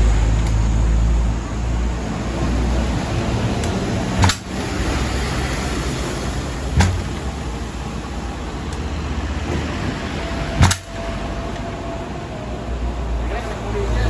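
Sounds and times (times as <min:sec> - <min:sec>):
sharp knocks: 0:06.8 - 0:07.3.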